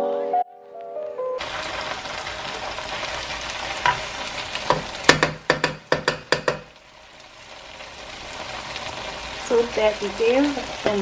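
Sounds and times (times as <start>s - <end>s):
food sizzling in a frying pan: 1.4s - 11.0s
spoon knocking against pan: 3.8s - 6.8s.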